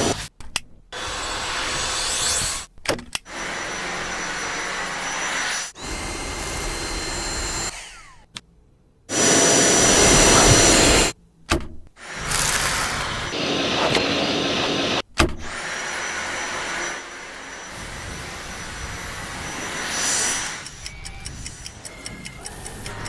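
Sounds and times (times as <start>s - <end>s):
vacuum cleaner running: 3.3s - 8.0s, 9.1s - 11.2s, 12.0s - 20.6s.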